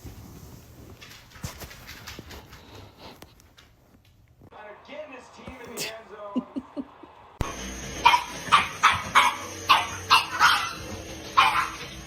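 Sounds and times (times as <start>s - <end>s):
dog barking: 8.0s - 12.0s.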